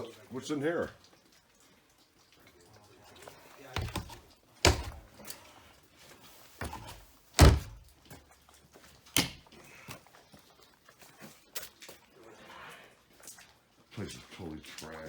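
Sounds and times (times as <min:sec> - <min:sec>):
heavy thumps and bangs: 0:03.8 - 0:05.1, 0:06.6 - 0:07.9.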